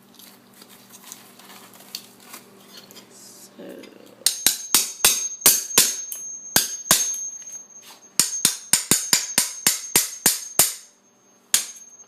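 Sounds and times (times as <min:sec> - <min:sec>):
hammer striking metal: 0:04.2 - 0:12.0.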